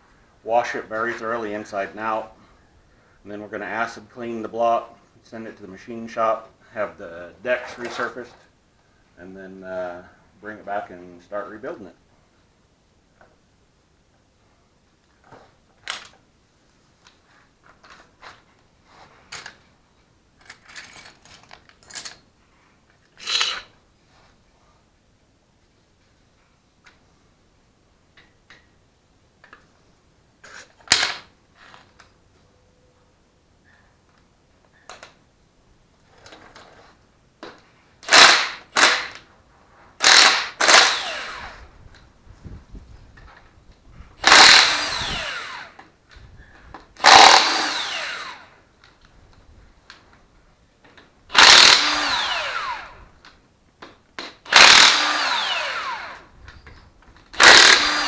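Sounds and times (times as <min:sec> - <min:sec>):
metal tools clinking and clattering: 0:20.4 - 0:22.2
impact wrench rattling bursts: 0:23.2 - 0:23.7, 0:30.8 - 0:31.3, 0:38.0 - 0:39.3, 0:40.0 - 0:41.6, 0:44.2 - 0:45.8, 0:47.0 - 0:48.6, 0:51.3 - 0:53.0, 0:54.3 - 0:56.3, 0:57.4 - 0:58.0.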